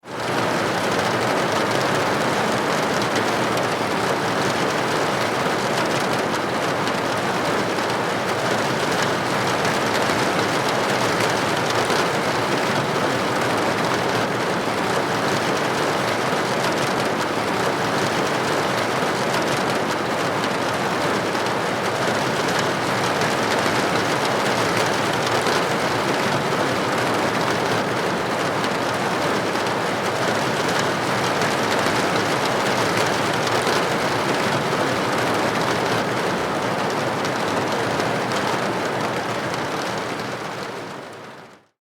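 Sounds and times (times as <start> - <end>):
rain falling on a roof: 0.0 - 41.8.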